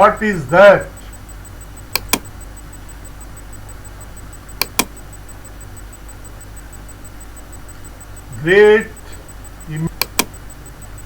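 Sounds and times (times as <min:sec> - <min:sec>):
steady low hum: 0:00.0 - 0:11.0
mouse double click: 0:01.9 - 0:02.4, 0:04.5 - 0:05.0, 0:10.0 - 0:10.6.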